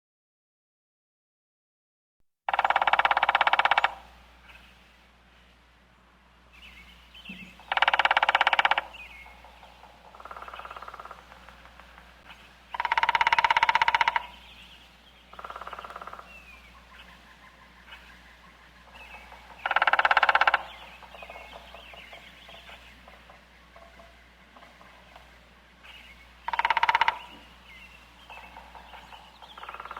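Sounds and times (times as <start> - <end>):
woodpecker drumming on wood: 2.5 - 4.6, 7.2 - 29.9
faint bird chirps: 6.5 - 11.6, 12.2 - 29.9.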